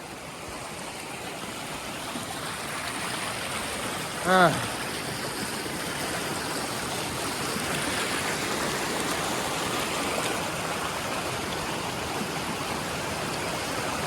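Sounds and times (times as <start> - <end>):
waterfall spilling over rocks: 0.0 - 14.0.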